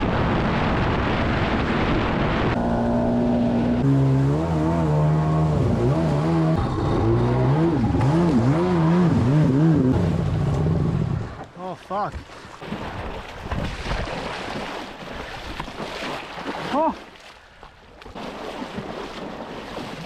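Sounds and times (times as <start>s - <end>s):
jet ski engine revving: 2.5s - 11.4s.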